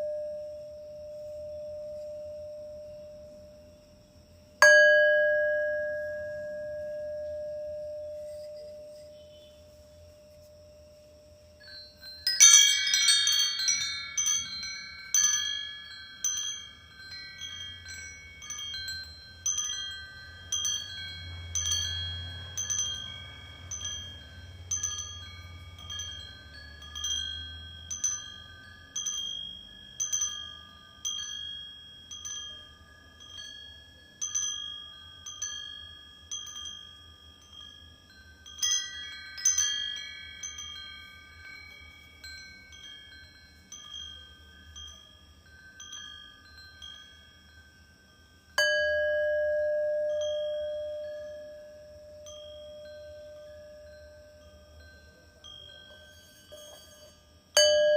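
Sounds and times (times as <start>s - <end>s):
metal wind chimes ringing: 0.0s - 57.9s.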